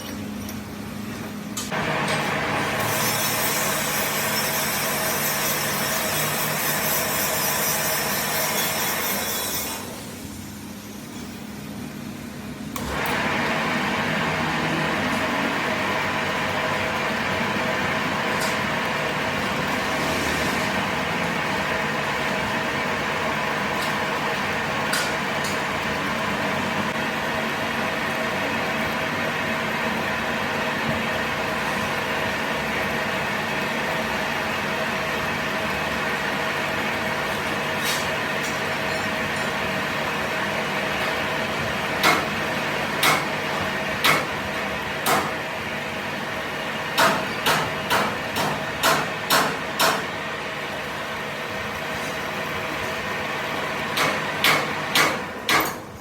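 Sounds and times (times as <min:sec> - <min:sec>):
workshop machine humming and whining: 0:00.0 - 0:56.0
hammer striking metal: 0:42.0 - 0:42.4, 0:43.0 - 0:43.3, 0:44.0 - 0:44.4, 0:45.0 - 0:45.4, 0:47.0 - 0:50.1, 0:53.9 - 0:55.9.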